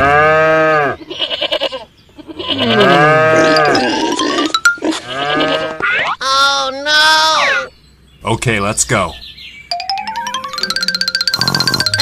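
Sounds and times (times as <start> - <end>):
animal-like vocal calls: 2.3 - 7.7, 11.3 - 12.0
music: 9.7 - 12.0.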